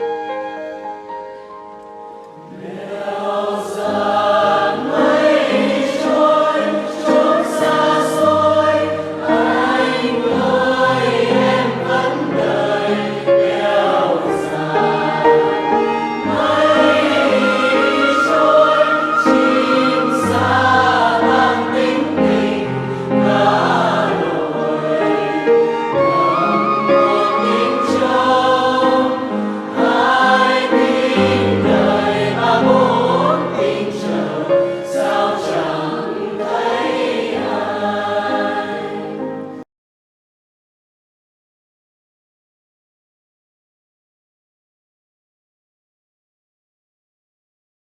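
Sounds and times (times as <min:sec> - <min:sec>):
choir singing: 0:02.2 - 0:39.6.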